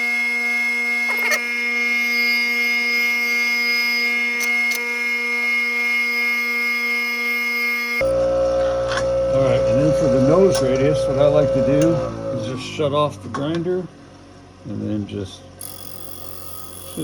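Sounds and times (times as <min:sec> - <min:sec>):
grinder humming: 0:00.0 - 0:13.0, 0:15.6 - 0:17.0
tool bit scraping grinding wheel: 0:01.0 - 0:05.0, 0:05.6 - 0:08.2, 0:10.0 - 0:12.1, 0:15.6 - 0:17.0.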